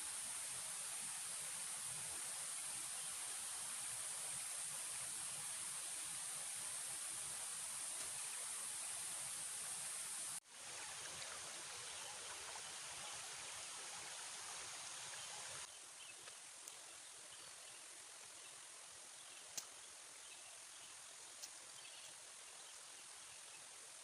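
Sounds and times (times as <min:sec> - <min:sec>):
faint outdoor background hiss: 0:00.0 - 0:24.0
light clicks: 0:19.5 - 0:19.8.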